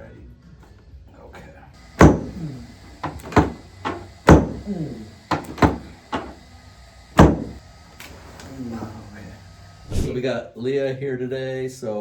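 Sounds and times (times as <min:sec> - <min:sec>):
sharp knocks: 0:02.0 - 0:02.4, 0:03.0 - 0:04.7, 0:05.3 - 0:06.4, 0:07.2 - 0:07.6.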